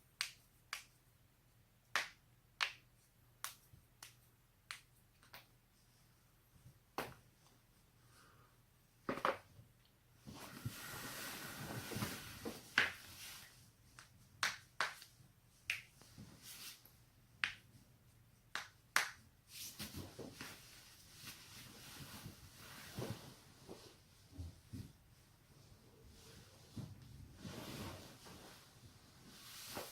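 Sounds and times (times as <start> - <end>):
soft rustling: 19.5 - 29.9.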